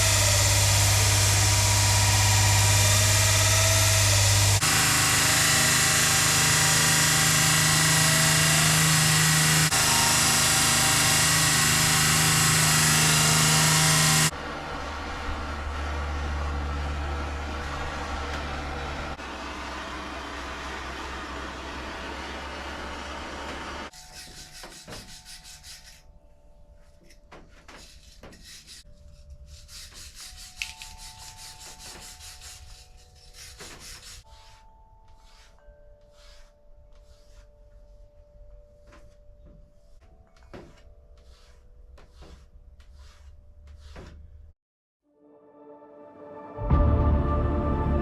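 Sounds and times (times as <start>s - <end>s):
knife blade rasping on sharpener: 23.9s - 26.1s, 27.7s - 37.5s.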